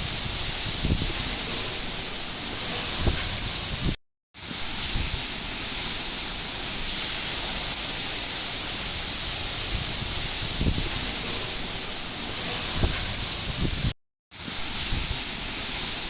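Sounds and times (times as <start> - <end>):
heavy rain falling: 0.0 - 3.8, 5.5 - 13.8.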